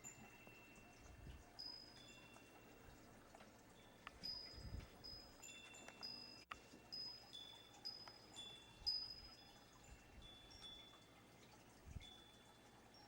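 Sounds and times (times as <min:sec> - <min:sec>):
faint chimes ringing: 0:00.0 - 0:13.0.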